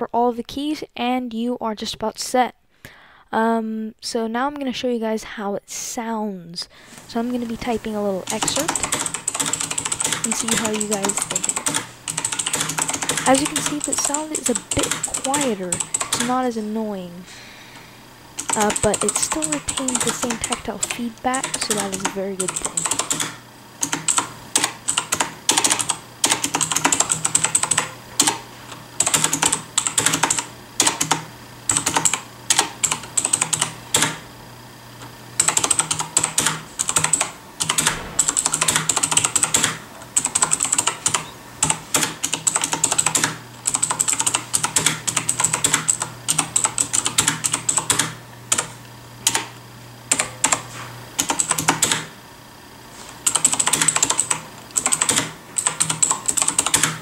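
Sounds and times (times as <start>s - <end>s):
mechanical keyboard typing: 7.2s - 16.6s, 18.4s - 34.2s, 35.4s - 50.6s, 51.2s - 52.1s, 53.2s - 57.0s.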